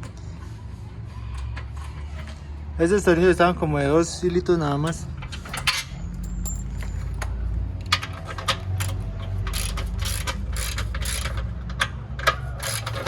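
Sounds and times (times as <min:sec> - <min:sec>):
ratchet wrench clicking: 0:07.2 - 0:13.0.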